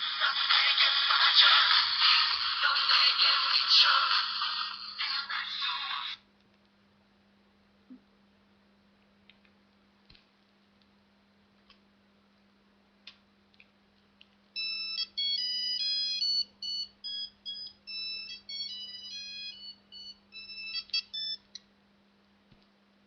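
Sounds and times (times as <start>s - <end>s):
phone ringtone beeping melody: 14.6s - 21.6s.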